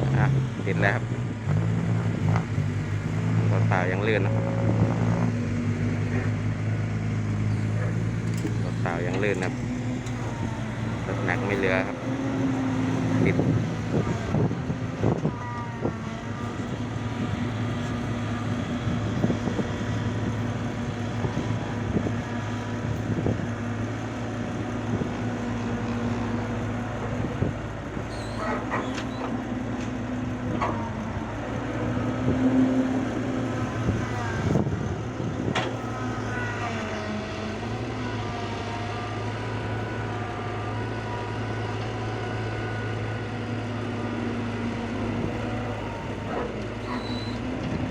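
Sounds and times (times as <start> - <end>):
heavy diesel engine running: 0.0 - 47.9
brief squeals: 28.1 - 29.3, 46.8 - 47.4.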